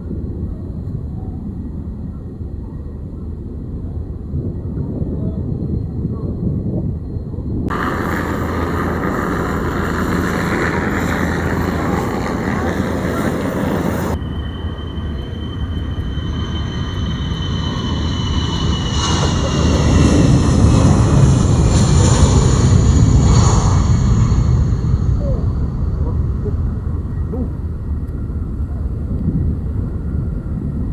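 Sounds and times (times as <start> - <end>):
turboprop aircraft engines droning: 0.0 - 30.9.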